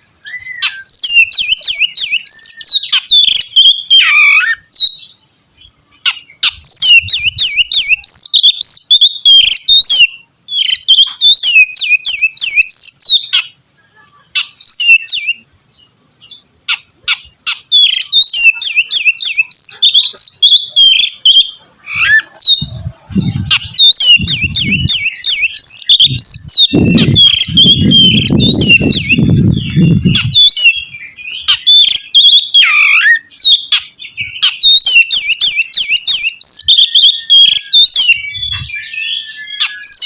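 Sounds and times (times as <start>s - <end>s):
songbird singing: 0.0s - 40.0s
dull low thumps: 26.0s - 30.4s.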